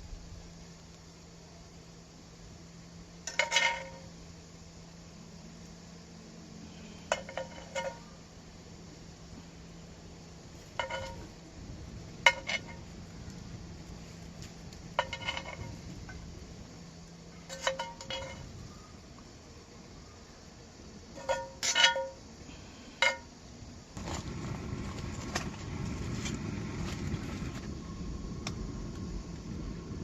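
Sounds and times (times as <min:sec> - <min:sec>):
faint low hum: 0:00.0 - 0:30.0
tableware clinking: 0:10.8 - 0:11.3, 0:21.2 - 0:22.2.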